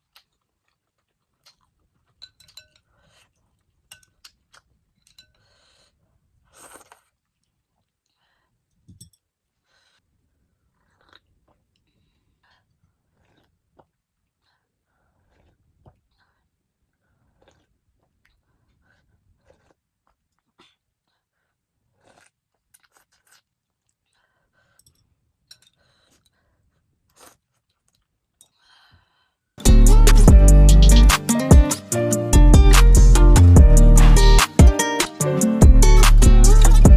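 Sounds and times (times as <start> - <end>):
chewing and mouth sounds: 0.0 - 5.8, 6.5 - 8.2, 10.7 - 14.5, 15.2 - 16.4, 17.2 - 20.8, 21.9 - 26.4
soft eating sounds: 0.0 - 36.9
mouth clicks: 29.6 - 36.9.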